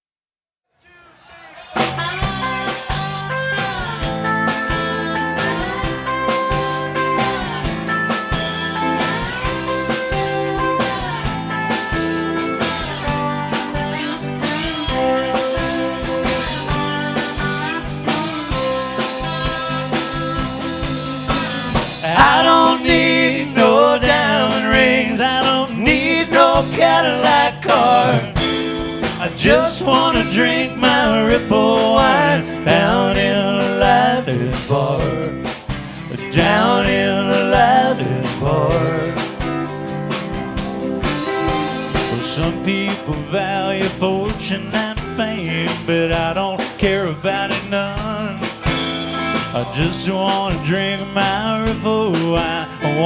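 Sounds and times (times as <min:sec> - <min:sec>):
live country blues band: 0:01.7 - 0:53.0
pedal steel guitar: 0:01.8 - 0:53.0
man singing: 0:18.5 - 0:39.7, 0:41.2 - 0:53.0.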